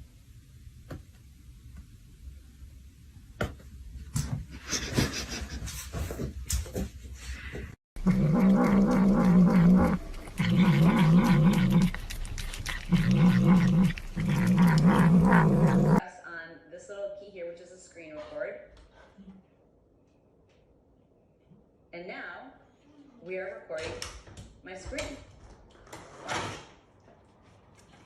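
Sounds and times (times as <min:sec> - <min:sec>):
animal growling: 0:08.0 - 0:16.0.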